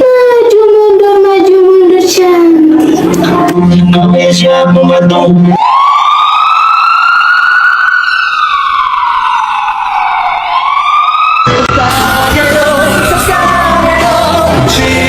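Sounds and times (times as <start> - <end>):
wailing emergency siren: 5.5 - 13.8.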